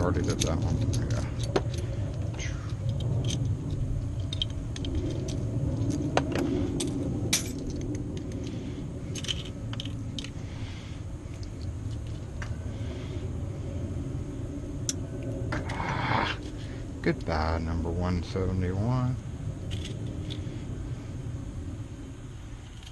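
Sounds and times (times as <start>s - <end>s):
metal clicks of keys and lock parts: 0.0s - 8.5s, 9.1s - 10.4s, 19.7s - 20.4s, 22.6s - 22.9s
steady low rumble: 0.0s - 22.9s.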